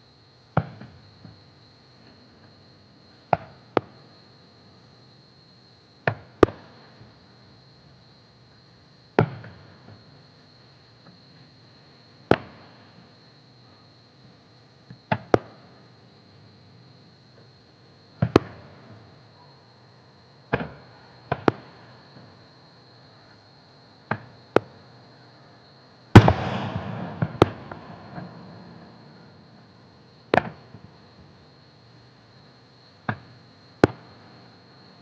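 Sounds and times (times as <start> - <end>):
firework crackle: 26.2 - 29.7
firework shells bursting: 26.2 - 29.7.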